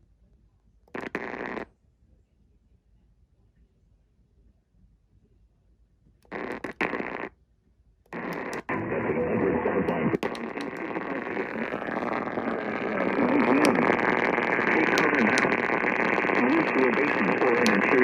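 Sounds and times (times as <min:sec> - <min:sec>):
radio static hiss: 0:01.0 - 0:01.6, 0:06.3 - 0:07.3, 0:08.1 - 0:18.0
faint warbling: 0:08.7 - 0:18.0.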